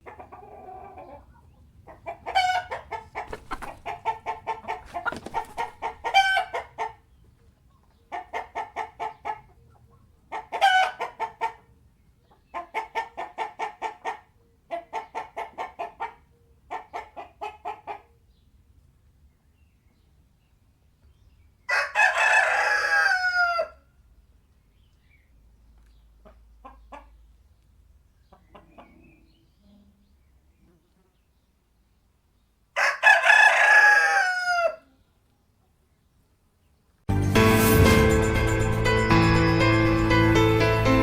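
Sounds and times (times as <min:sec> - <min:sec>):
chickens clucking: 0:00.0 - 0:18.2, 0:25.8 - 0:27.5, 0:28.1 - 0:29.7.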